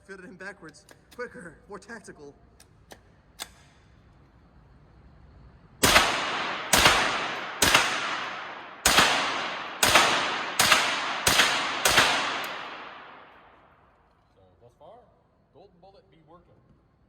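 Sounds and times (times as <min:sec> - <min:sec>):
rifle shots echoing: 0:05.8 - 0:13.8.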